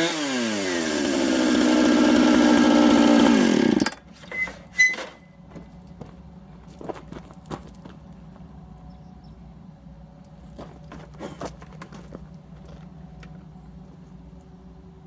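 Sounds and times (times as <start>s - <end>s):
chainsaw cutting log: 0.0s - 4.0s.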